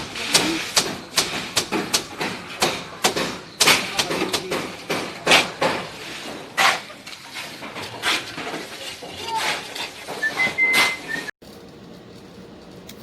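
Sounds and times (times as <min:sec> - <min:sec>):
building work knocks and taps: 0:00.3 - 0:06.8.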